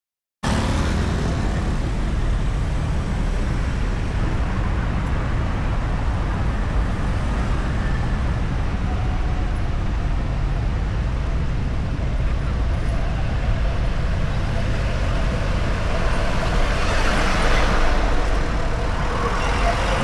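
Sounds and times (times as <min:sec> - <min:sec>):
highway traffic rumble: 0:00.4 - 0:20.0.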